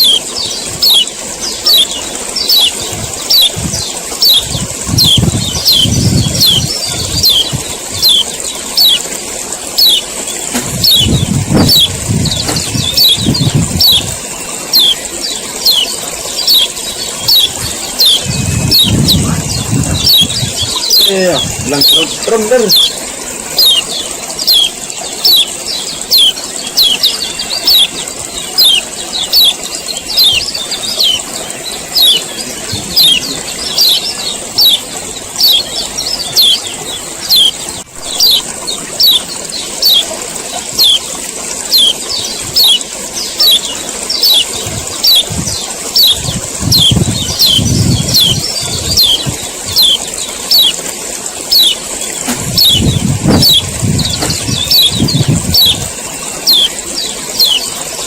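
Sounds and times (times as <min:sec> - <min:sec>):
bird giving sharp calls: 0:00.0 - 0:57.8
low rumbling: 0:00.1 - 0:09.0, 0:09.8 - 0:41.1.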